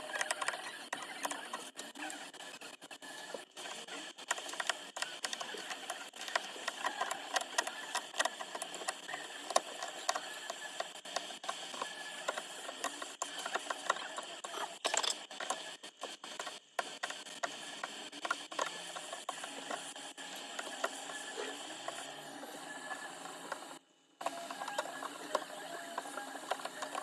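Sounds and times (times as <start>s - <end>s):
small tools clicking and scraping: 11.8s - 15.6s.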